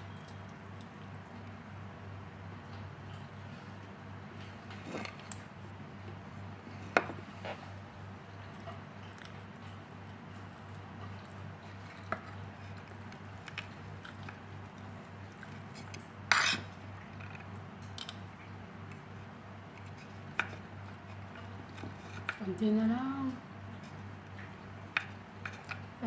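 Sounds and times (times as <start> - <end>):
cutlery clatter: 16.3 - 16.7.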